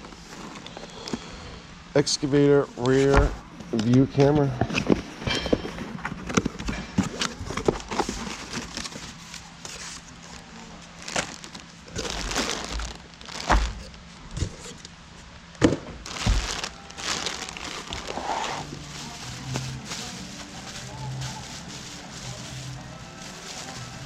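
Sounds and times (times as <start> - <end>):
packaging crinkling: 7.2 - 14.0, 16.0 - 24.0.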